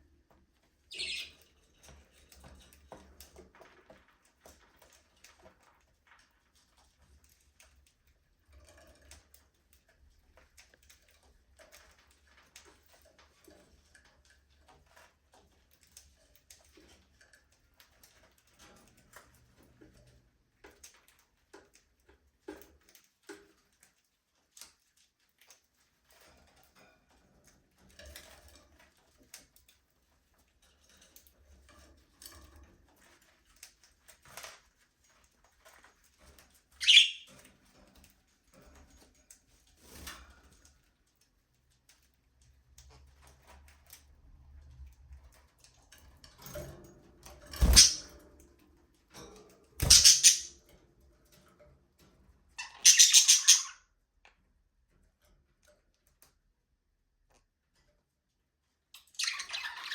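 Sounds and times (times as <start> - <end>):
faint clicks and scratches: 0.0 - 59.9
budgerigars chirping: 0.9 - 1.3, 36.8 - 37.3, 47.6 - 48.1, 49.8 - 50.5, 52.6 - 53.7.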